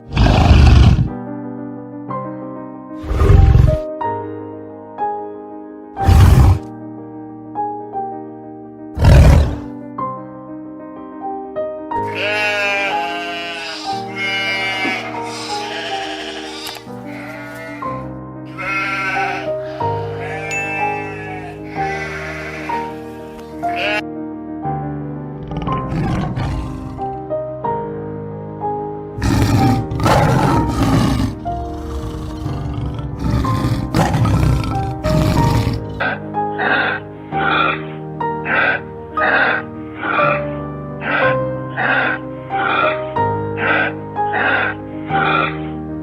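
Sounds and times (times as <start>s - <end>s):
large animal roaring: 0.0s - 1.2s, 3.0s - 3.8s, 6.0s - 6.7s, 9.0s - 9.7s, 25.4s - 27.2s, 29.2s - 36.1s
background music with sustained notes: 0.0s - 46.0s
farm animal bleating: 12.0s - 24.0s
music of held notes: 19.3s - 24.0s.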